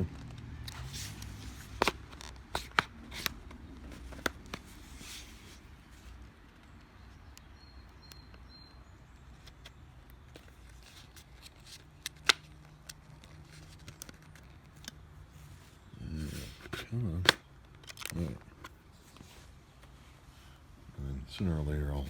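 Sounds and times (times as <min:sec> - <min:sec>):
plastic clips clicking and scraping: 0:00.1 - 0:04.7, 0:09.4 - 0:15.1, 0:16.6 - 0:18.8.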